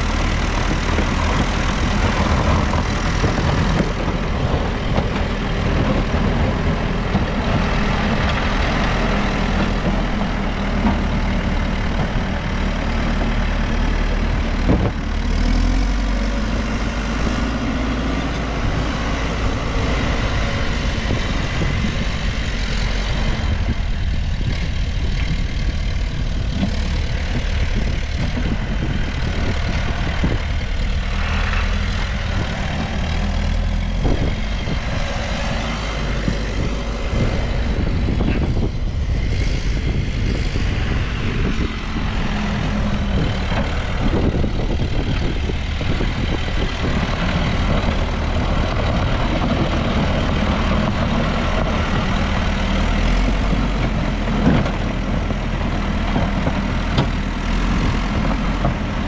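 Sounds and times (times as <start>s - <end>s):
diesel engine working: 0.0s - 59.0s.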